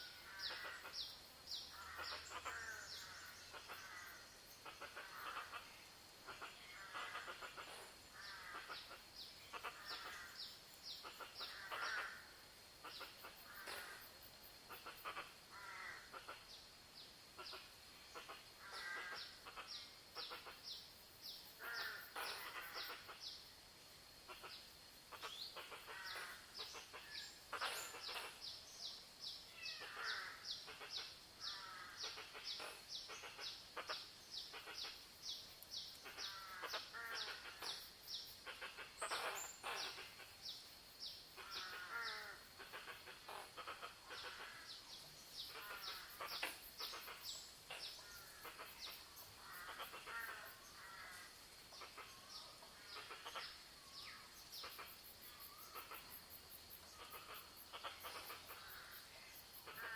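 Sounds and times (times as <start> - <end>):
birds chirping and warbling: 0.0 - 23.5, 24.3 - 59.9.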